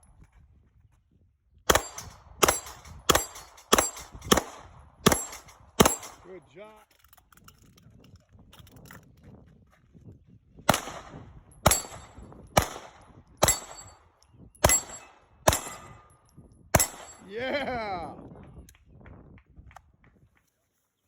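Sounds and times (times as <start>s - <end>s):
single gunshots: 1.7s - 6.3s, 10.7s - 13.9s, 14.6s - 16.0s, 16.8s - 17.2s.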